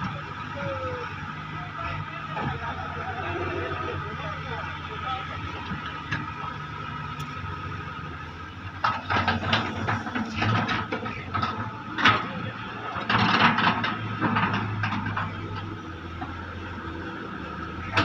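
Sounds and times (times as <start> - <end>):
excavator diesel engine running: 0.0 - 18.0
clattering and scraping: 8.8 - 16.4.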